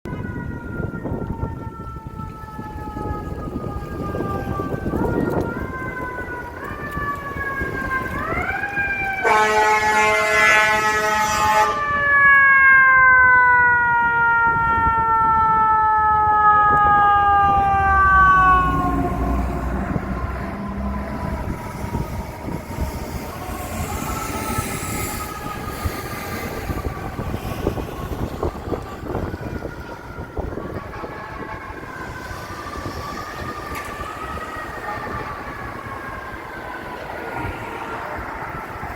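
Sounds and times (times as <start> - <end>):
fire engine siren: 0.0 - 38.9
air horn blast: 9.2 - 12.0
truck low rumble: 13.1 - 38.9.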